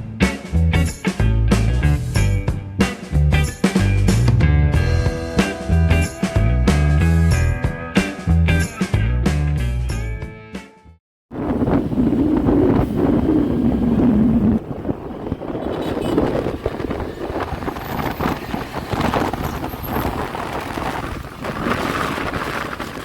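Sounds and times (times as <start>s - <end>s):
wind buffeting microphone: 11.3s - 23.0s.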